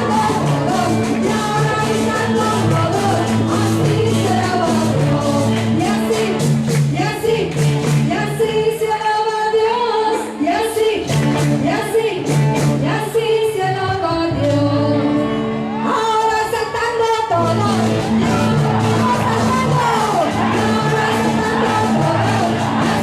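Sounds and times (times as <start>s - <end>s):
instrumental accompaniment with beat: 0.0s - 8.3s, 10.9s - 13.0s, 17.4s - 23.0s
group of voices singing: 0.0s - 15.8s, 17.4s - 23.0s.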